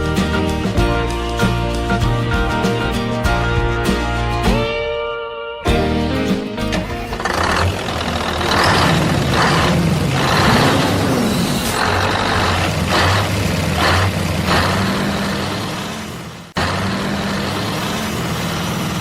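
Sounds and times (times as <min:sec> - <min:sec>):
truck engine droning: 0:05.7 - 0:19.0.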